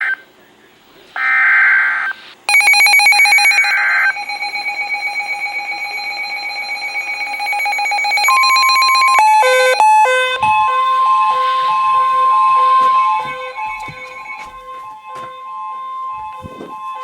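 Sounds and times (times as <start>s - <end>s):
pulsing electronic alert tone: 2.5s - 14.9s
electronic beeps: 2.5s - 15.3s.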